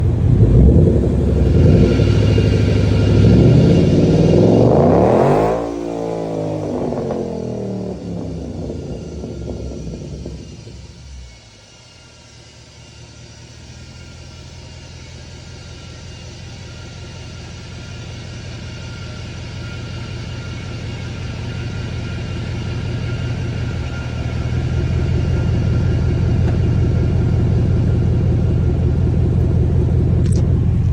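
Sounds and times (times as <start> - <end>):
car accelerating: 0.0 - 11.4, 20.5 - 30.9
rear axle whirring: 0.0 - 30.9.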